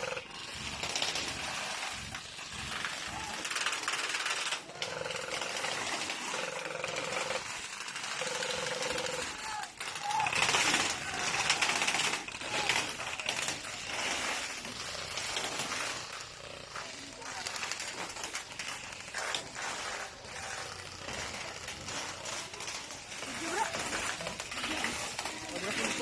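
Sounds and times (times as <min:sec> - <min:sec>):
airsoft gun firing bursts: 0:00.0 - 0:16.5.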